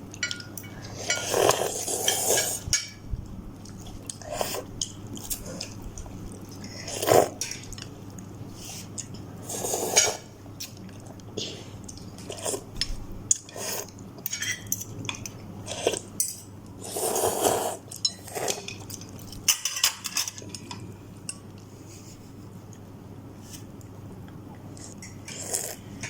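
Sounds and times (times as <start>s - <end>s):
cutlery clinking against bowl: 0.1s - 3.0s, 14.2s - 15.4s, 17.9s - 21.4s.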